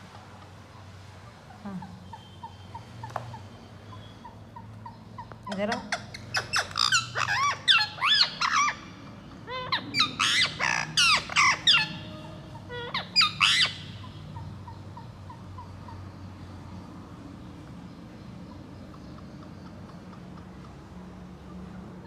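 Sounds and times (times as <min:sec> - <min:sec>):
parrot squawking: 0:01.5 - 0:16.0.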